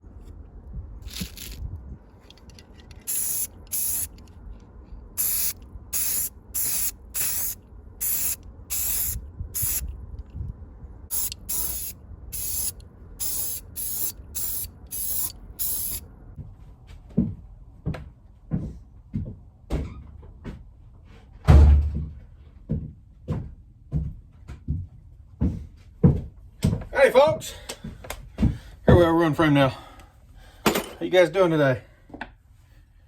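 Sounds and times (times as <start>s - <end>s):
spray can hissing: 1.0s - 1.6s, 3.0s - 4.2s, 5.2s - 9.9s, 11.1s - 16.0s.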